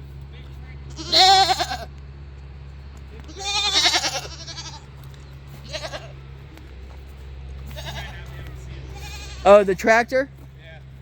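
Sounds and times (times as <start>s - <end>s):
goats bleating: 0.9s - 2.0s, 3.2s - 6.2s, 7.6s - 9.8s.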